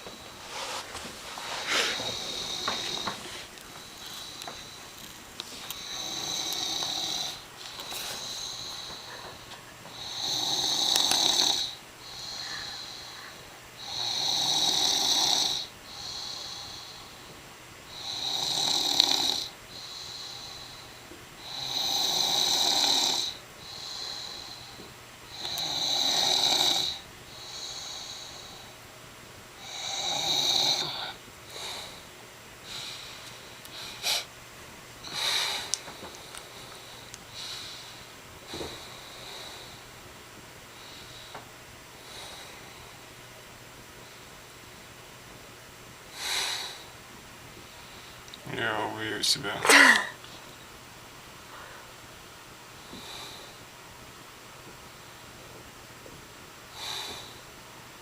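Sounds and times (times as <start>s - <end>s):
person snoring: 1.6s - 4.8s, 5.7s - 17.1s, 17.9s - 20.8s, 21.4s - 28.6s, 29.6s - 31.7s.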